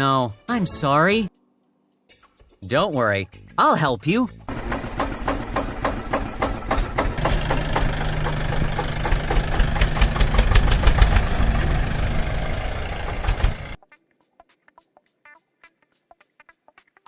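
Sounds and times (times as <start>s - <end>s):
engine clattering knock: 4.5s - 13.8s.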